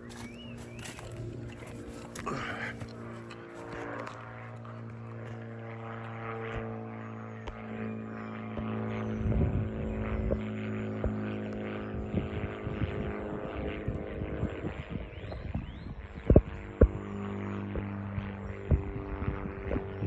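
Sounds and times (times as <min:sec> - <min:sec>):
crackling and rustling in undergrowth: 0:00.0 - 0:05.4
steady droning motor: 0:00.0 - 0:20.0.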